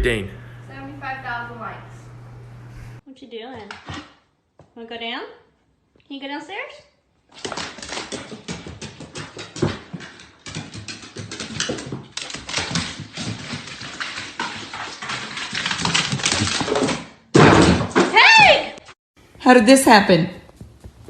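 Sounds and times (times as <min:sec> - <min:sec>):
dog claws scrabbling on hard floor: 0:07.3 - 0:18.1.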